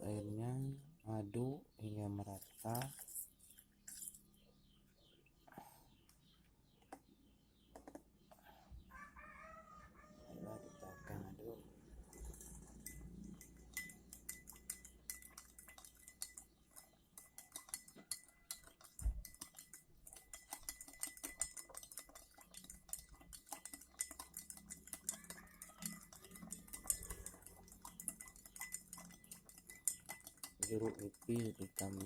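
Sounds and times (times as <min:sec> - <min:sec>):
spoon clinking in a cup: 0:12.0 - 0:32.0.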